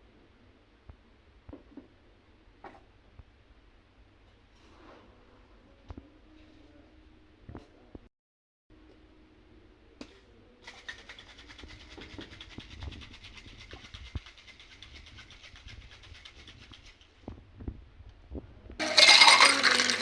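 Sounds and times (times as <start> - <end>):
ice rattling in cocktail shaker: 10.7 - 17.0, 18.8 - 20.0.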